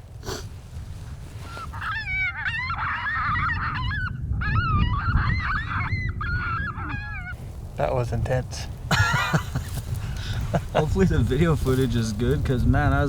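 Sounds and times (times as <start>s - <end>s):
low wind rumble: 0.0s - 13.0s
coyotes yipping and howling: 1.5s - 7.4s.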